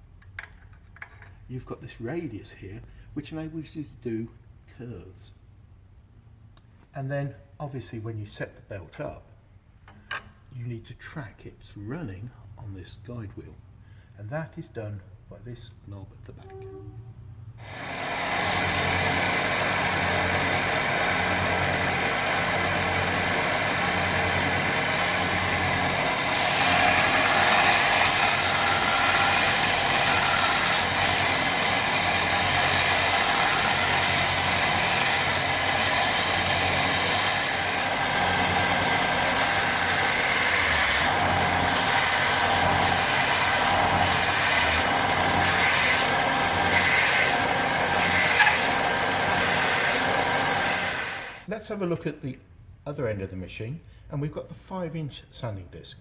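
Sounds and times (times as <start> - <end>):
belt sander running: 17.6 - 51.5.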